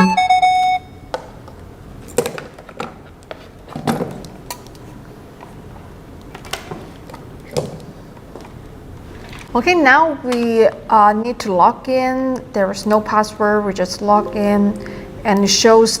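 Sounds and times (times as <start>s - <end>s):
music cue: 14.2s - 16.0s.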